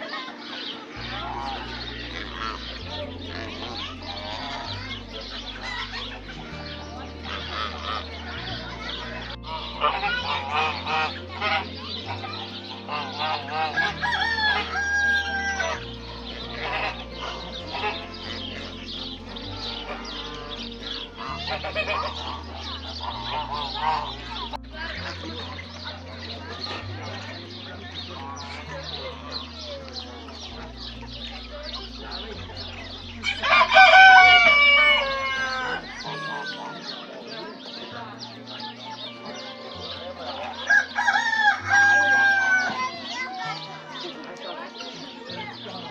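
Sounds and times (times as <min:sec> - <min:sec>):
chickens clucking: 0:00.0 - 0:45.9
geese honking: 0:00.0 - 0:45.9
small birds chirping: 0:00.0 - 0:45.9
rooster crowing: 0:33.2 - 0:36.4, 0:40.7 - 0:42.9.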